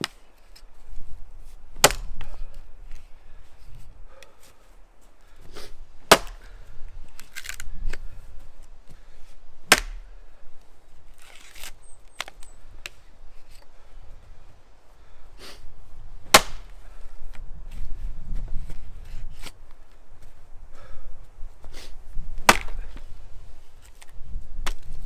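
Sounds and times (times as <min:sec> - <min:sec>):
axe chopping wood: 0:01.8 - 0:02.4, 0:05.6 - 0:08.0, 0:09.7 - 0:10.2, 0:16.3 - 0:16.9, 0:22.4 - 0:23.1
rustling: 0:09.7 - 0:14.6.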